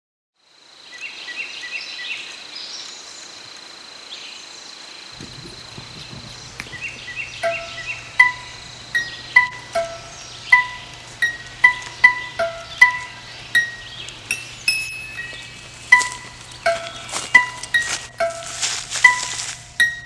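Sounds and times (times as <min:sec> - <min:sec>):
high insect-like drone: 0:05.1 - 0:20.0
low hum: 0:05.2 - 0:20.0
chime-like notes: 0:05.4 - 0:20.0.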